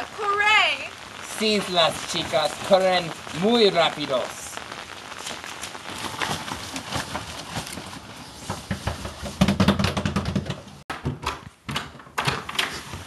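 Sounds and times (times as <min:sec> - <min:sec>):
scattered knocks and rustles: 0:05.6 - 0:13.0.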